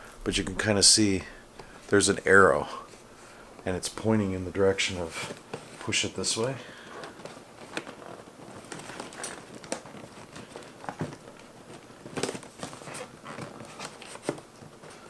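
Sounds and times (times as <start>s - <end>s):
hands tapping and scraping packaging: 3.6s - 15.0s.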